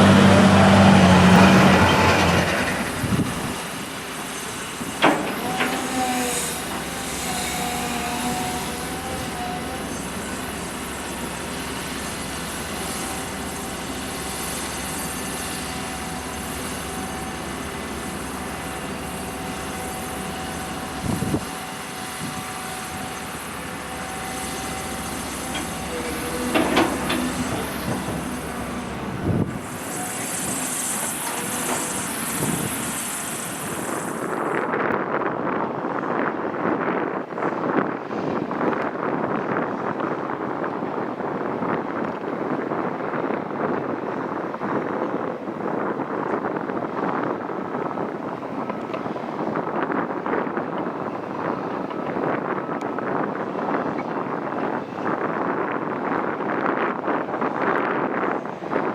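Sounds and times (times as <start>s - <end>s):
heavy machine engine under load: 0.0s - 58.9s
hiss: 24.4s - 34.6s.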